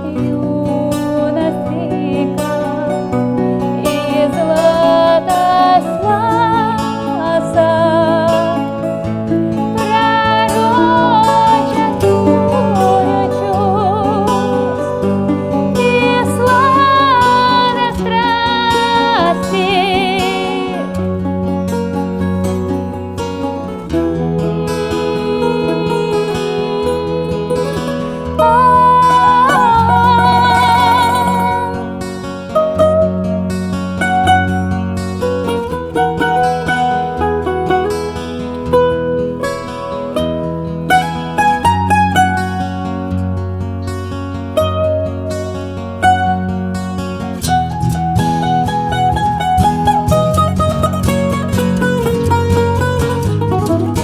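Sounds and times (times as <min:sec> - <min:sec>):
woman singing with vibrato: 0:00.0 - 0:21.3, 0:23.7 - 0:33.2
acoustic guitar chords: 0:00.0 - 0:54.0
bouzouki: 0:00.0 - 0:54.0.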